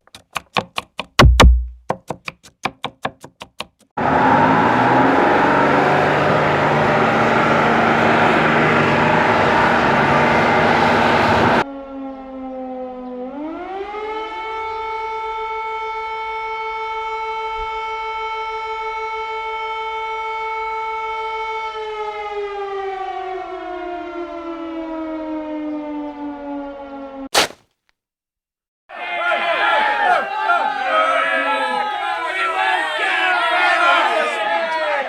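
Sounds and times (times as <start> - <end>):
air-raid siren: 4.0 - 27.3, 29.0 - 35.0.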